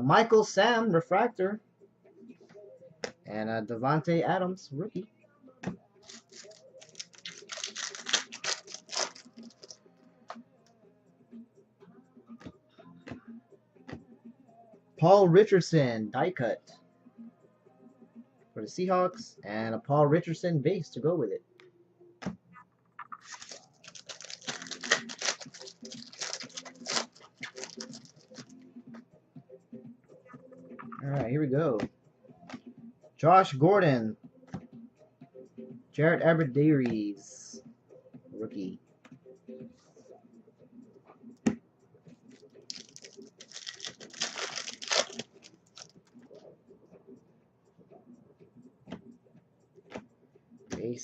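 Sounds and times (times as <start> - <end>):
foil wrapper crinkling and tearing: 6.1 - 9.7, 23.2 - 28.4, 42.7 - 46.0.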